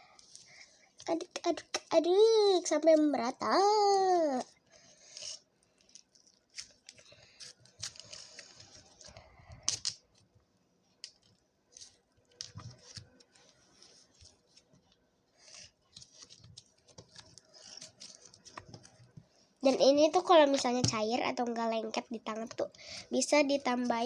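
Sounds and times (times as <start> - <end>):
slime being stirred squelching: 4.2 - 9.8, 11.1 - 21.2.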